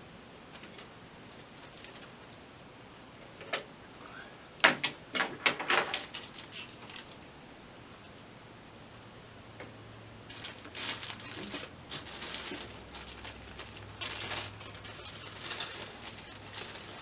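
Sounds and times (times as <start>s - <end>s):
hands rummaging through parts: 4.6s - 7.2s, 10.3s - 17.0s.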